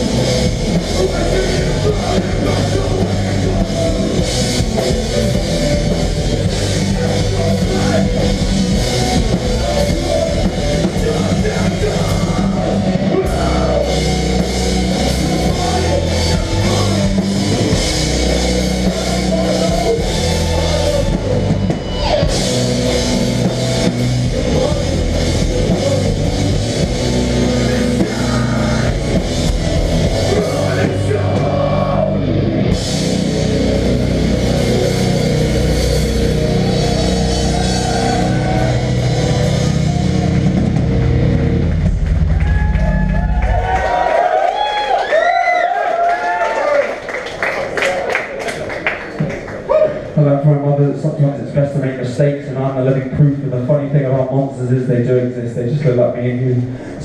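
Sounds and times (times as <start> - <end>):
drum kit beat: 0.0 - 44.6
distorted electric guitars and bass: 0.0 - 47.4.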